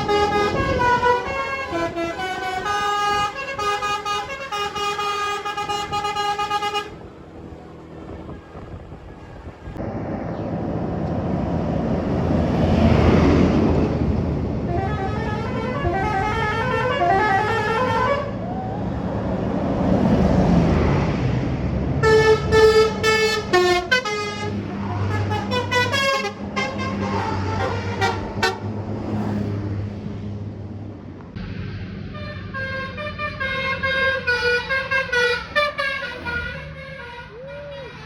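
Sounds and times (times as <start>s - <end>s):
musical air horn: 0.0s - 7.0s, 14.6s - 18.4s, 22.0s - 28.7s, 32.1s - 38.0s
low engine hum: 0.0s - 38.0s.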